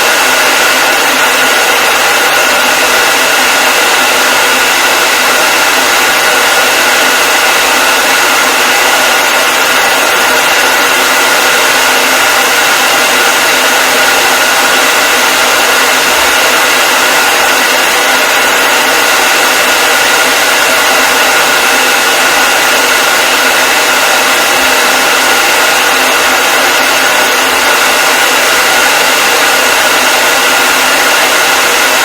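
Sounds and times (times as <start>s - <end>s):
hair dryer running: 0.0s - 32.0s.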